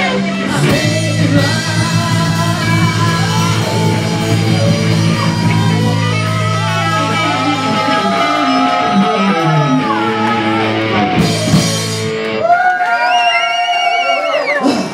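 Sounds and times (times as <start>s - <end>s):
bass line: 0.0s - 12.8s.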